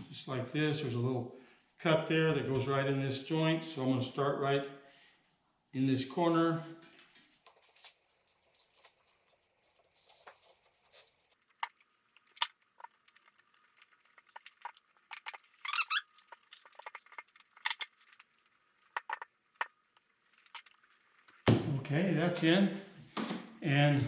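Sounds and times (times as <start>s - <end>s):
rubbery squeak: 14.2s - 18.3s.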